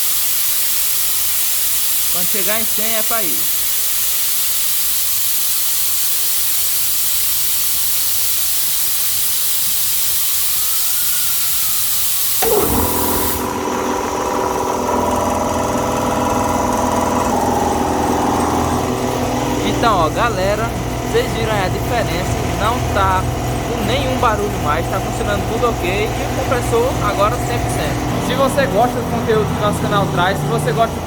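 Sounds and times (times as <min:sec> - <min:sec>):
compressed air hissing: 0:00.0 - 0:31.0
compressor motor running: 0:00.2 - 0:04.0, 0:11.4 - 0:31.0.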